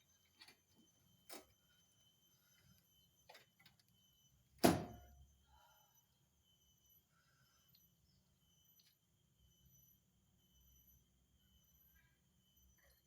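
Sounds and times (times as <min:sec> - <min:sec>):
loud metal knock ringing: 0:04.6 - 0:05.1.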